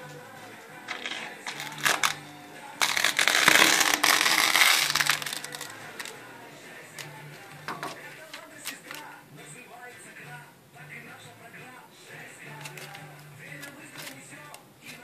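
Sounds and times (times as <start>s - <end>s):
tape ripping off glass: 0.8s - 6.2s, 12.6s - 15.0s.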